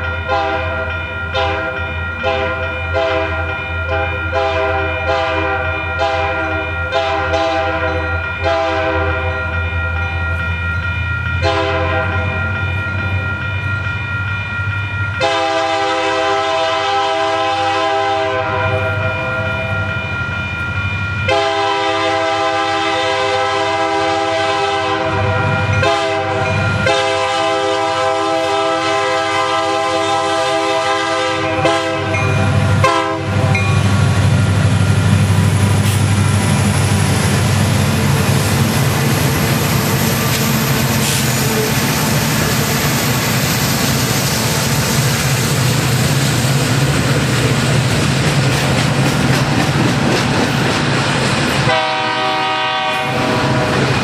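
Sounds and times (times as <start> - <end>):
train noise: 0.0 - 54.0
locomotive air horn: 0.3 - 9.5, 11.4 - 12.4, 15.2 - 19.4, 21.3 - 33.5, 51.7 - 53.9
locomotive engine rumble: 25.2 - 54.0.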